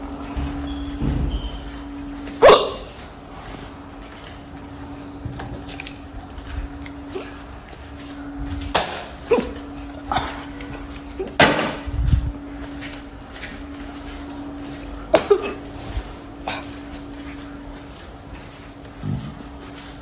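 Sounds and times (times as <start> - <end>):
faint steady hum: 0.0 - 20.0
person hiccuping: 2.4 - 3.0, 7.0 - 7.4, 9.1 - 11.4, 15.1 - 15.7, 16.4 - 16.8.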